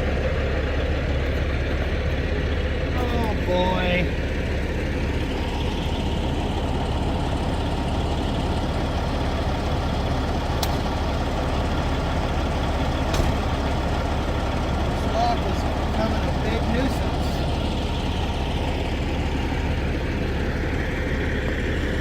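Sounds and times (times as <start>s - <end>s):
diesel truck engine idling: 0.0s - 22.0s.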